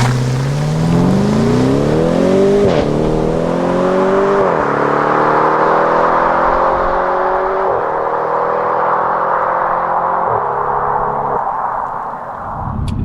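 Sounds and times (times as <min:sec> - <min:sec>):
car engine accelerating: 0:00.0 - 0:12.8.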